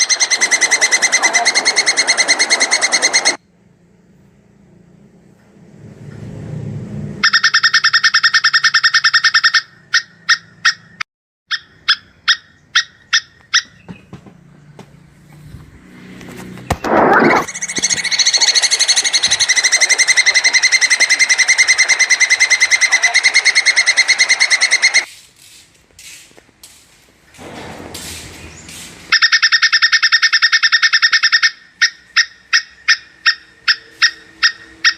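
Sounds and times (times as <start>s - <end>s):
squirrel chattering trill: 0.0s - 3.4s, 17.0s - 25.1s.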